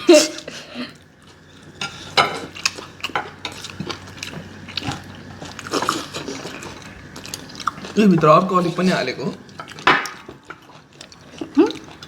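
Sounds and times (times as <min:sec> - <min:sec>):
utensils clinking against dishes: 0:01.8 - 0:03.7.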